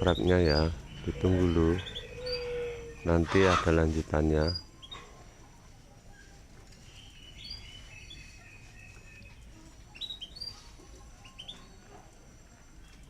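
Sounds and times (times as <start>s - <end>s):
songbird chirping: 0.0s - 13.0s.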